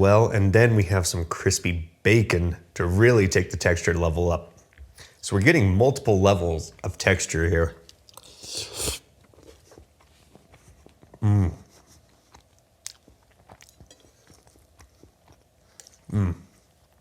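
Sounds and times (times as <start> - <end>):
wet chewing with crunching: 4.5 - 5.2, 7.7 - 17.0
person humming mm: 8.3 - 9.0, 11.2 - 11.8, 16.1 - 16.6.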